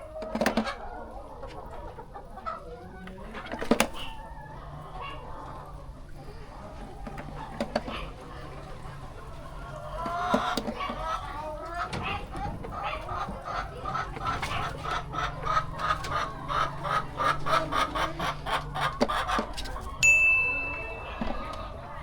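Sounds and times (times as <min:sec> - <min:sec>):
hens clucking: 0:00.0 - 0:22.0.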